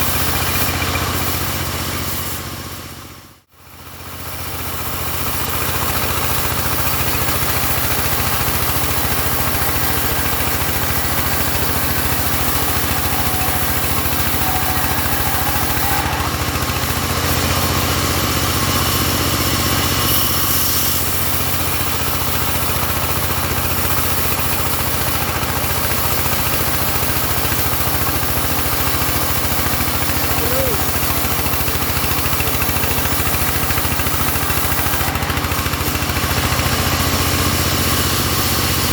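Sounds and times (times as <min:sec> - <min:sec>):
sawmill engine running: 0:00.0 - 0:38.9
high hiss: 0:04.9 - 0:16.8, 0:20.0 - 0:35.1.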